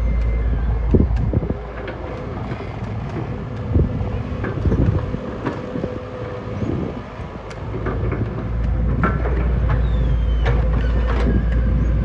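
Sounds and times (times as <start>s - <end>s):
heavy machinery diesel engine running: 0.0s - 12.0s.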